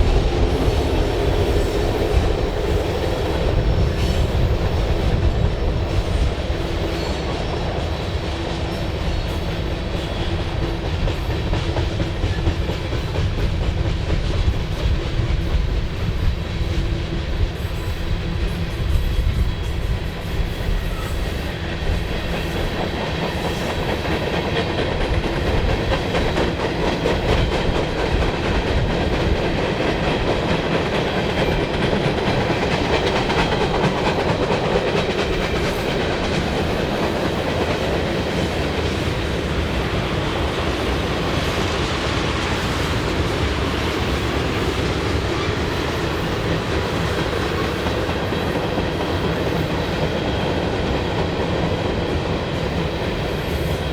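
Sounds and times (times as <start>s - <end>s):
train wheels rumbling on rail: 0.0s - 53.9s
wheels clickety-clack over track: 0.0s - 53.9s.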